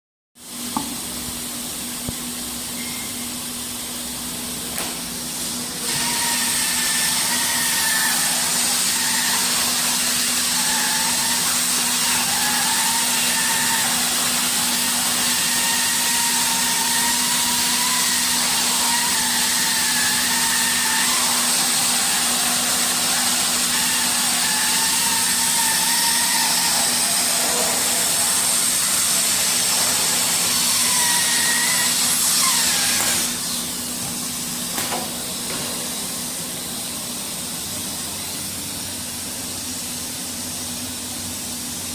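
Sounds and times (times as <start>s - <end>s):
blower hissing: 0.4s - 41.9s
welding machine humming: 1.2s - 41.9s
faint wavering whistle: 2.8s - 3.4s.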